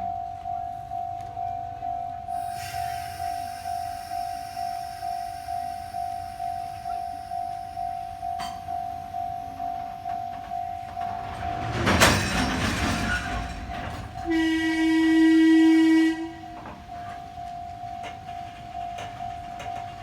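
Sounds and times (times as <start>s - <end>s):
level-crossing warning bell: 0.0s - 20.0s
train horn blast: 14.2s - 16.6s.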